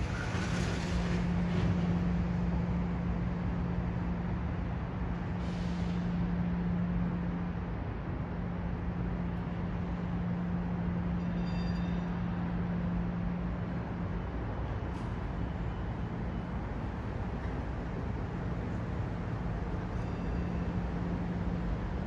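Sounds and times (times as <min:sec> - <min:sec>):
city traffic noise: 0:00.0 - 0:22.0
faint high squeal: 0:11.2 - 0:12.4, 0:19.9 - 0:20.8.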